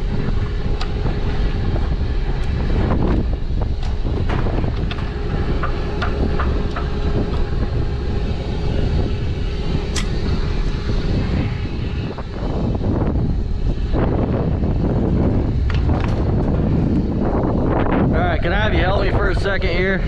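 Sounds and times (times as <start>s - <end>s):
engine running with hum: 0.0s - 20.0s
sharp clicks and knocks: 3.8s - 7.7s.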